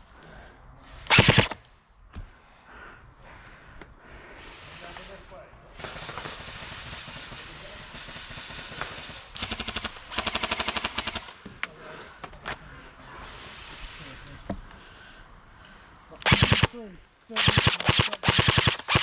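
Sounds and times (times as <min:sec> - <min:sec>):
airsoft rifle full-auto bursts: 0:01.1 - 0:01.6, 0:08.0 - 0:11.3, 0:16.2 - 0:19.0.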